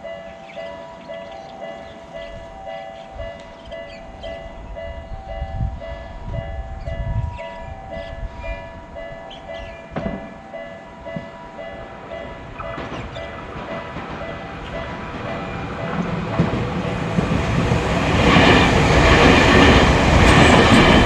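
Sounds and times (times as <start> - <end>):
two-tone crossing bell ringing: 0.0 - 17.0
train rumbling past: 0.0 - 21.0.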